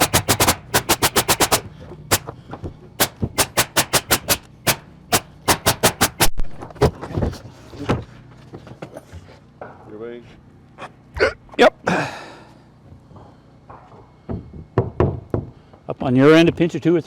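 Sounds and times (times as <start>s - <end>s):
nails driven into roofing: 0.0s - 7.3s.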